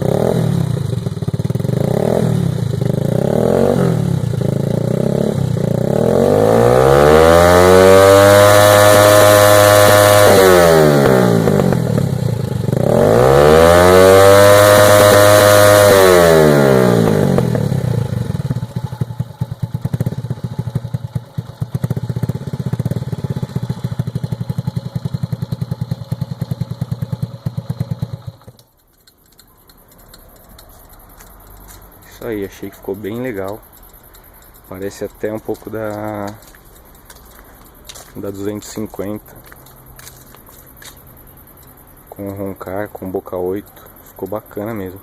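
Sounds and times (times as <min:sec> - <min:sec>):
motorcycle engine revving: 0:00.0 - 0:45.0.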